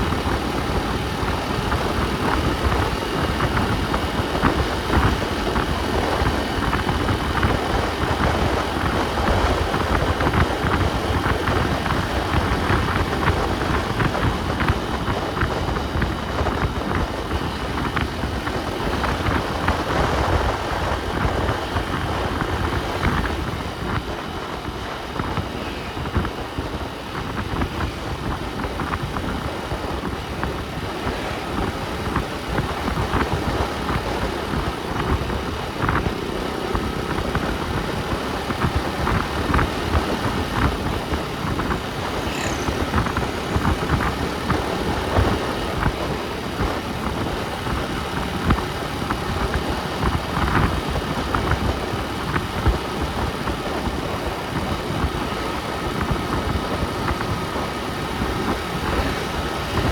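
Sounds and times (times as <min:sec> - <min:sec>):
vehicle engine and road rumble: 0:00.0 - 0:59.9
high squeak: 0:42.0 - 0:45.1.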